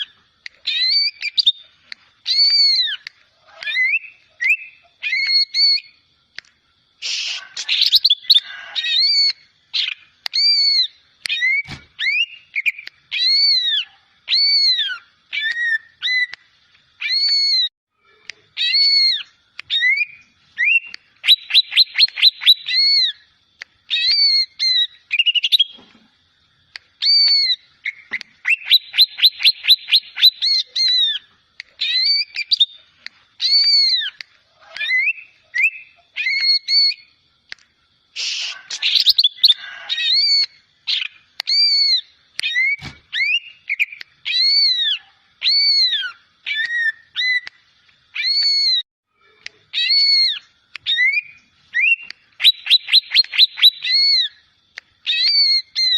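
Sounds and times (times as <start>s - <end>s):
bird trilling: 0.0s - 5.9s, 18.6s - 23.2s, 27.0s - 32.8s, 33.4s - 37.1s, 49.7s - 54.4s
bird whistling notes: 18.6s - 23.2s, 27.0s - 32.8s, 49.8s - 54.4s.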